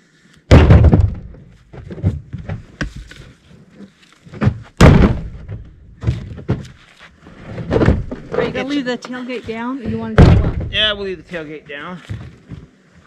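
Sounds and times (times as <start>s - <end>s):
firewood landing in truck bed: 0.5s - 3.3s, 4.2s - 8.6s, 10.1s - 10.9s.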